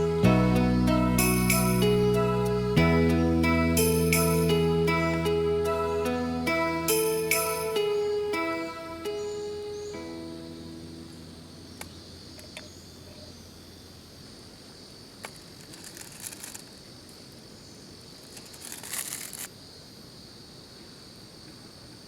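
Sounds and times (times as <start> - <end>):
insects trilling: 6.9 - 22.0
crinkling rustling noise: 15.2 - 17.3, 18.2 - 19.6.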